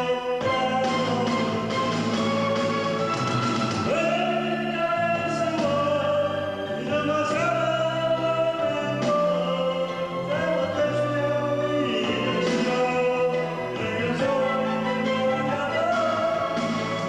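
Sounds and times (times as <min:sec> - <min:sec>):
person singing: 0:00.0 - 0:03.0, 0:03.8 - 0:17.0
backing music: 0:00.0 - 0:17.0.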